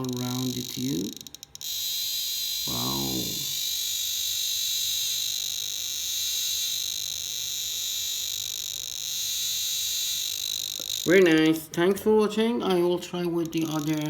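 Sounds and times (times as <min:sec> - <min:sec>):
radiation detector pulsing buzz: 0:00.0 - 0:11.8, 0:13.4 - 0:14.0.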